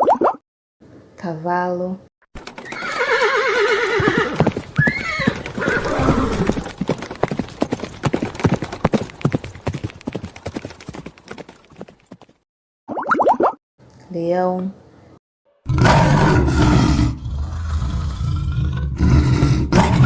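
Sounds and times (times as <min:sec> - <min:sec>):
horse whinnying: 0:02.4 - 0:06.9
hooves clip-clopping: 0:02.4 - 0:12.4.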